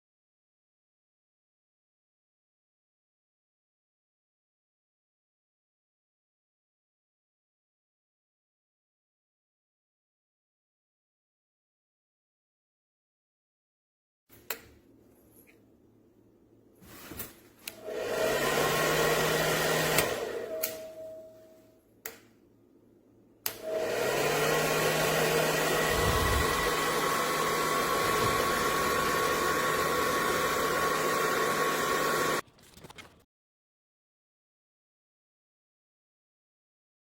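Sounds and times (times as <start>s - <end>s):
hair dryer running: 17.7s - 21.2s, 23.5s - 32.4s
hair dryer switch click: 19.9s - 21.0s, 23.4s - 23.7s.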